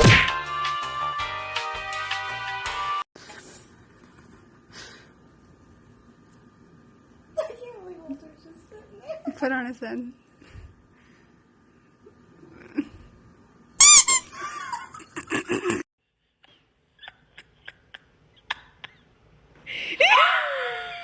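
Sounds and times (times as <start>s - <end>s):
high-pitched squeak: 13.8s - 14.3s.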